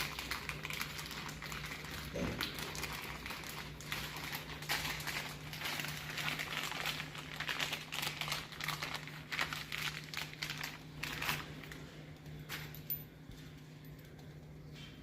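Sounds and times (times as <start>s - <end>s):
plastic packaging crinkling: 0.0s - 12.8s
steady low hum: 0.0s - 15.0s.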